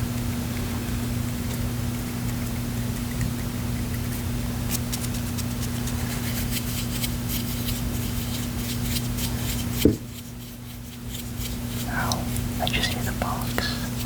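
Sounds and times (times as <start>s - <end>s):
low electrical hum: 0.0s - 14.0s
loud thump: 9.8s - 10.1s.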